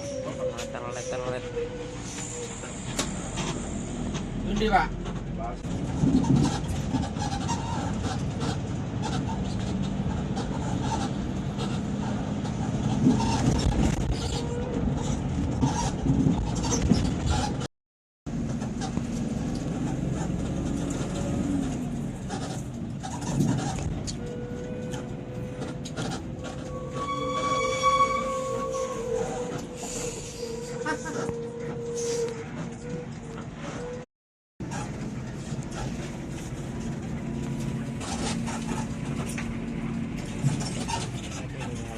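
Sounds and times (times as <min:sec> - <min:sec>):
bus engine and road rumble: 0:00.0 - 0:17.7, 0:18.3 - 0:41.9
bus horn: 0:24.1 - 0:25.8, 0:26.4 - 0:29.8, 0:30.5 - 0:33.0.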